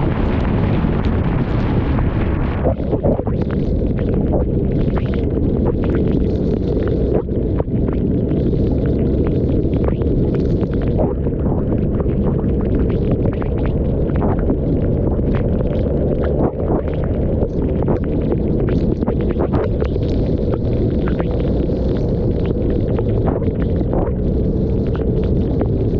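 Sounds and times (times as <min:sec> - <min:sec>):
raindrops tapping camera: 0:00.0 - 0:25.9
wind roar on microphone: 0:00.0 - 0:25.9.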